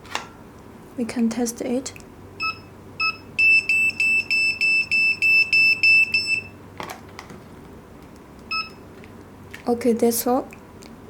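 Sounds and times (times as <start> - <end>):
pager beeping rapidly: 2.4 - 6.5, 8.5 - 8.8
short keypad beep: 8.5 - 8.8.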